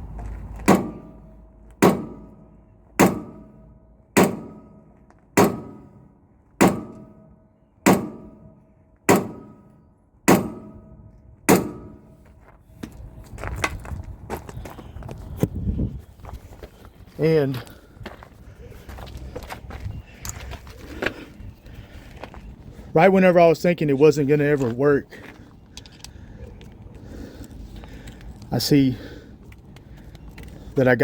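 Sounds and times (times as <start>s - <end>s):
hammer striking metal: 0.7s - 12.1s.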